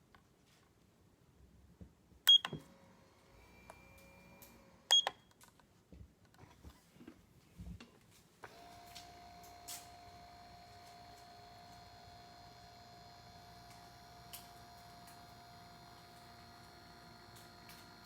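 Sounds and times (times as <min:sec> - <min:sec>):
massage motor humming: 0:02.6 - 0:04.8, 0:08.5 - 0:18.0
small clicks: 0:13.4 - 0:18.0.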